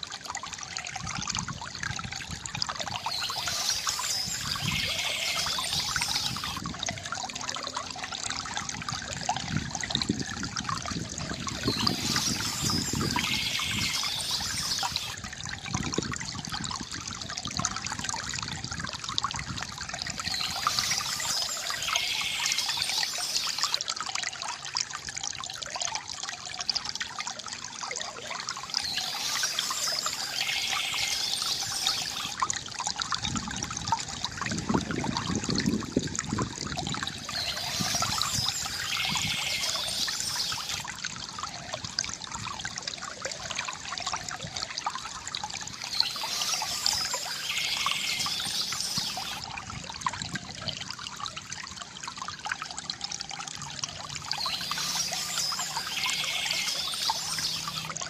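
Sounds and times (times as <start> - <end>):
stream water trickling: 0.0 - 58.0
bird singing: 2.9 - 6.6, 11.5 - 15.2, 20.2 - 23.8, 28.2 - 32.4, 37.1 - 40.8, 45.8 - 49.4, 54.3 - 58.0.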